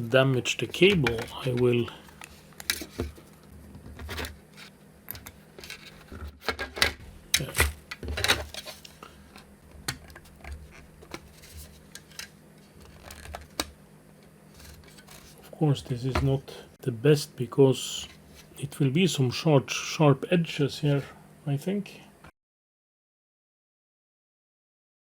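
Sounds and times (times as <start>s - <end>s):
plastic parts handled: 0.6s - 13.7s, 14.5s - 15.5s.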